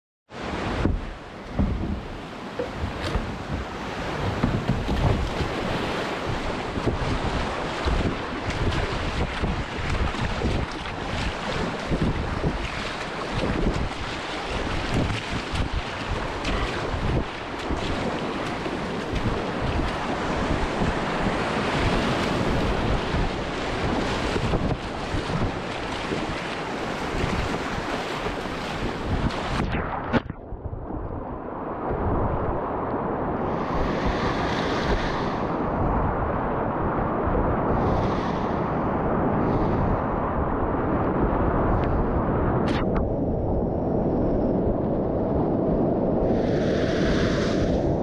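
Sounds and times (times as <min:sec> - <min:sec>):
wind buffeting microphone: 0:00.4 - 0:48.0
water splashes: 0:00.5 - 0:31.2.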